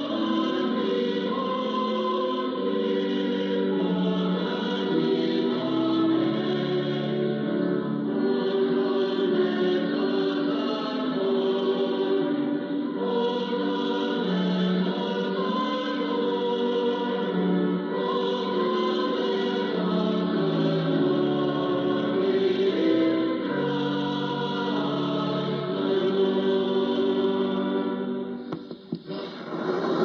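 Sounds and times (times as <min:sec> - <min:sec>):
choir singing a hymn on am radio: 0:00.0 - 0:30.0.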